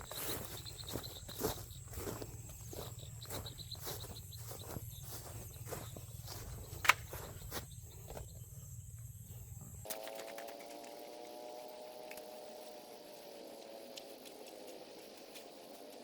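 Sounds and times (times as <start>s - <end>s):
footsteps through vegetation: 0.0s - 8.3s
high pulsing insect trill: 0.0s - 16.0s.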